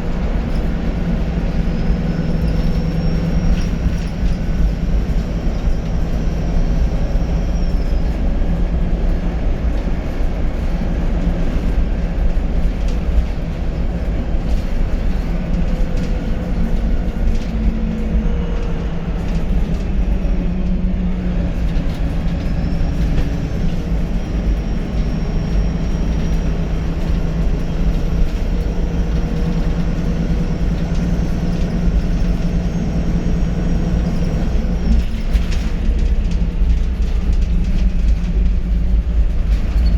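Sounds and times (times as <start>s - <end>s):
bus diesel engine drone: 0.0s - 39.9s.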